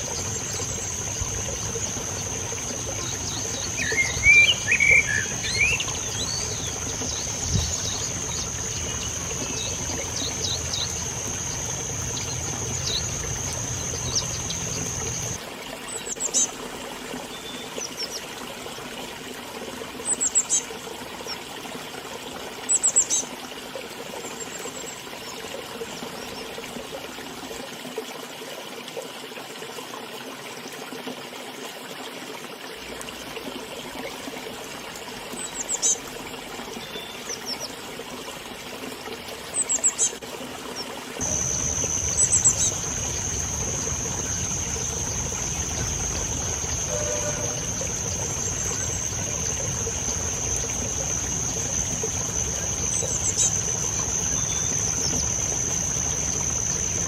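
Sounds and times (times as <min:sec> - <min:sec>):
river flowing: 0:00.0 - 0:57.0
birds chirping: 0:41.2 - 0:57.0.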